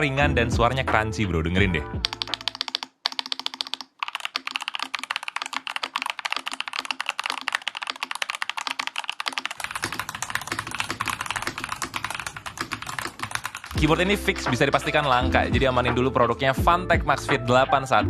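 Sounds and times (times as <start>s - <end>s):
crunchy mechanical keyboard typing: 2.0s - 15.2s.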